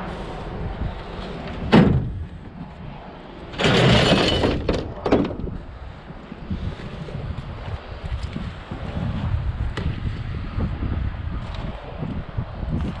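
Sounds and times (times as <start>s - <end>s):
scrap metal clattering crash: 3.5s - 5.0s.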